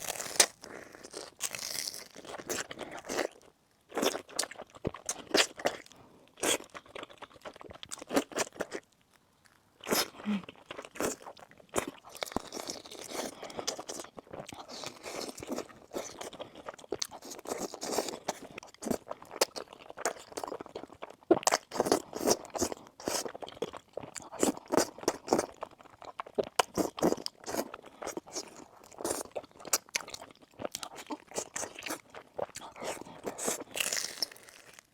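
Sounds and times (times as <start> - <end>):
chewing crunchy food: 0.0 - 34.9.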